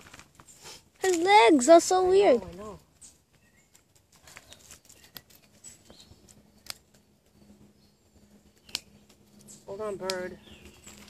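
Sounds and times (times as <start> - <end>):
gloved hands rustling: 2.3 - 7.2.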